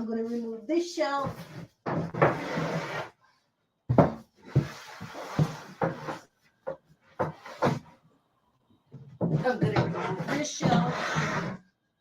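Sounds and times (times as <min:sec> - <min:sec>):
wood scraping: 0:01.2 - 0:03.2, 0:03.9 - 0:07.9, 0:09.2 - 0:11.6.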